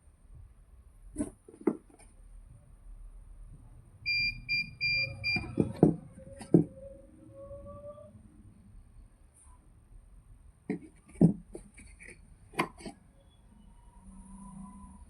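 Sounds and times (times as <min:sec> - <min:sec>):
short electronic beeps: 0:04.1 - 0:05.8.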